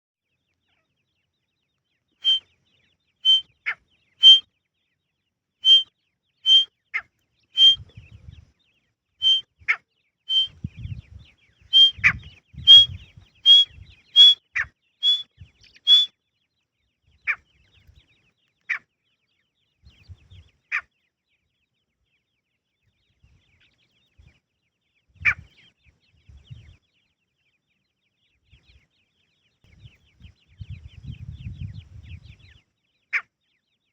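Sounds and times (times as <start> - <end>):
francolin calling: 5.6 - 5.8, 7.6 - 7.8, 11.8 - 12.0, 12.7 - 12.9, 13.5 - 14.4, 15.0 - 15.2, 15.9 - 16.1.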